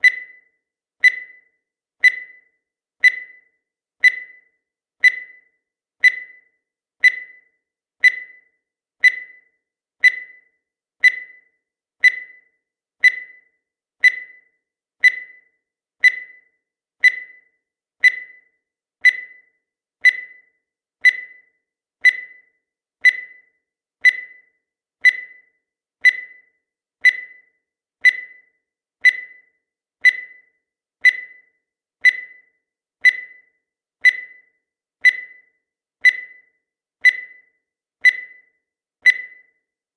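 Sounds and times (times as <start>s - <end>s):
sharp high ticks: 0.0s - 0.4s, 1.0s - 1.4s, 2.0s - 2.4s, 3.0s - 15.4s, 16.0s - 19.4s, 28.0s - 39.5s.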